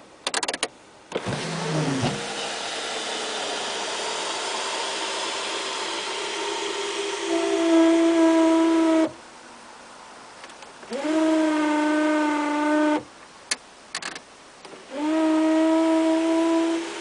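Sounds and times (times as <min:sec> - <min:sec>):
sunroof squealing: 0:01.2 - 0:03.8, 0:04.7 - 0:09.2.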